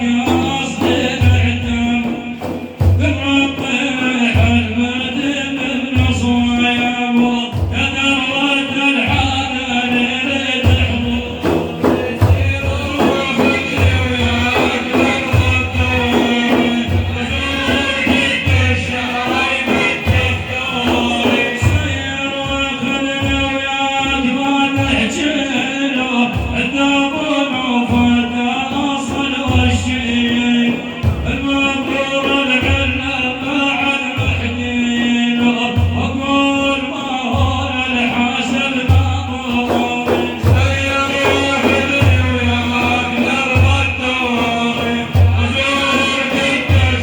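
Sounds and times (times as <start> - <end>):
hand-drum beats: 0.0 - 47.0
man singing praise song: 0.0 - 47.0.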